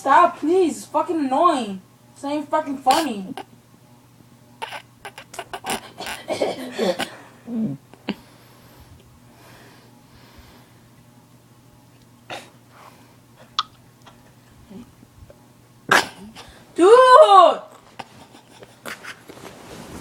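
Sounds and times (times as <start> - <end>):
person making mouth noises: 4.6 - 6.3.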